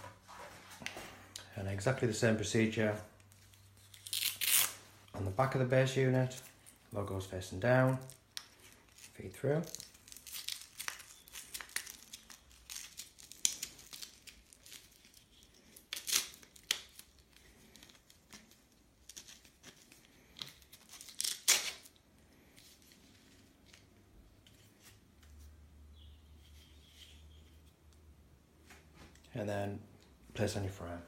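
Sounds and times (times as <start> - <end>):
velcro strap ripping scrapes: 3.3 - 4.9, 7.9 - 22.0.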